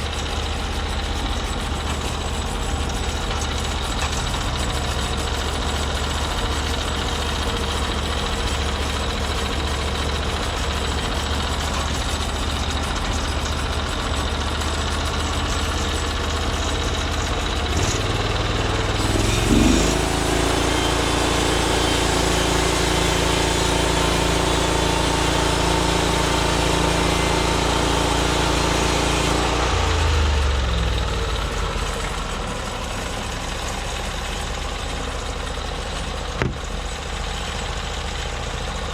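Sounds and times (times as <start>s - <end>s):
small gasoline engine revving: 13.7s - 33.1s.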